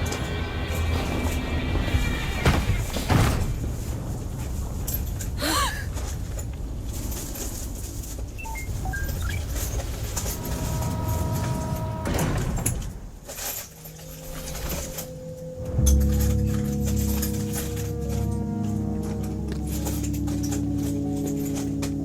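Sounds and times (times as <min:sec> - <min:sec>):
low rumble of sound effects: 0:00.0 - 0:22.0
held musical note: 0:10.2 - 0:12.5, 0:14.3 - 0:22.0.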